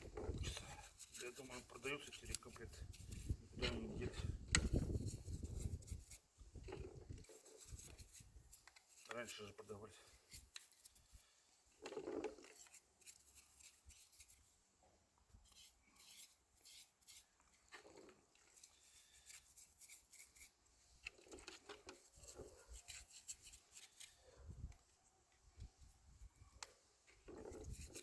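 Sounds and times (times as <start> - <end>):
light rubbing: 0.0 - 14.4, 15.4 - 24.6, 26.6 - 28.0.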